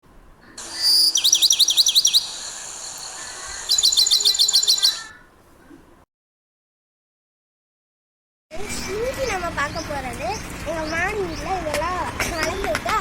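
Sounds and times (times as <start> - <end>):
songbird chirping: 0.5 - 5.8.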